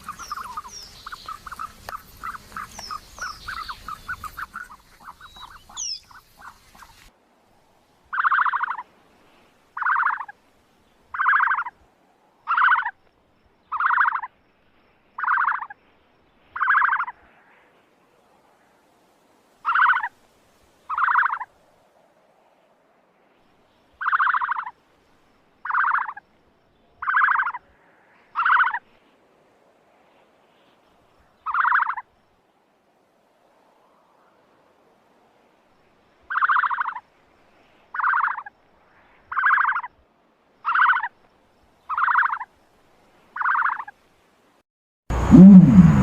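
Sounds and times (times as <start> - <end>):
ostrich raspy calls: 0.0 - 7.1, 8.1 - 8.8, 9.8 - 10.4, 11.1 - 11.7, 12.5 - 13.0, 13.7 - 14.3, 15.2 - 15.8, 16.6 - 17.2, 19.6 - 20.1, 20.9 - 21.5, 24.0 - 24.7, 25.6 - 26.2, 27.0 - 27.7, 28.3 - 28.8, 31.4 - 32.1, 36.3 - 37.0, 37.9 - 38.5, 39.3 - 40.0, 40.6 - 41.2, 41.9 - 42.5, 43.4 - 43.9.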